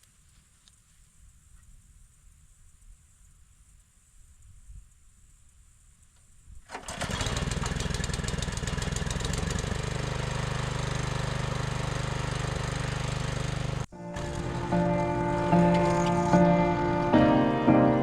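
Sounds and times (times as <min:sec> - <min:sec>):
small gasoline engine running: 0:06.7 - 0:16.4.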